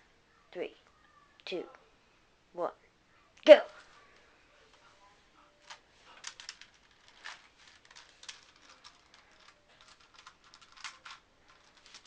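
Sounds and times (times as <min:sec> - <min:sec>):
plastic cube clicking: 0:06.2 - 0:12.0.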